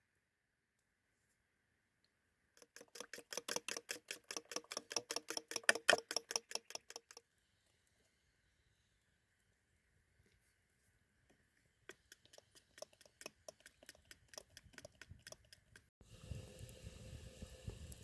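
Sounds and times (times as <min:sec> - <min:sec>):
whisk striking a bowl: 0:02.6 - 0:07.2, 0:11.9 - 0:15.8.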